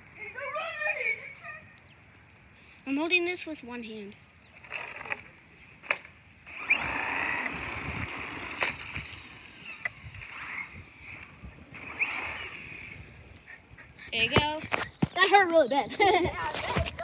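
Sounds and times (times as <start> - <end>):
rc car motor whining: 4.6 - 13.5.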